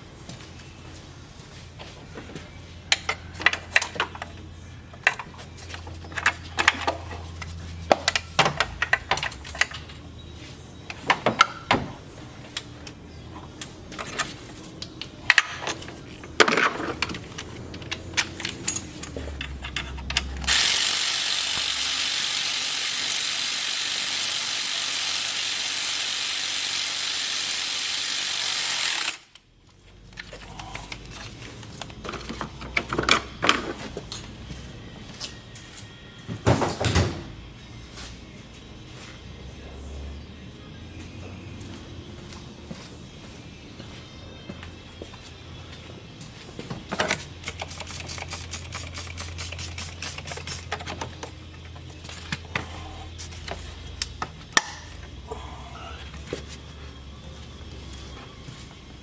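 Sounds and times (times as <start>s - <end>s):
metallic tool clicks and clinks: 14.8s - 22.8s, 47.0s - 51.4s.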